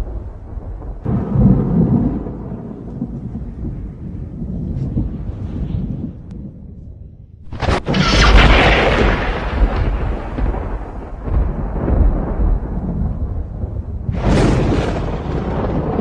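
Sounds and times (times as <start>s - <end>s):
thunder crack and rumble: 0.0s - 16.0s.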